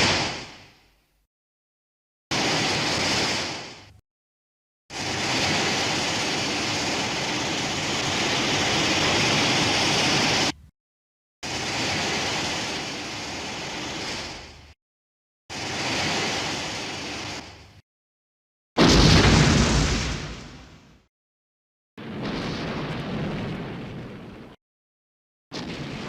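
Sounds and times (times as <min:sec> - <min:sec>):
rushing hiss-like noise: 0:02.3 - 0:04.0, 0:04.9 - 0:10.6, 0:11.4 - 0:14.8, 0:15.5 - 0:17.7.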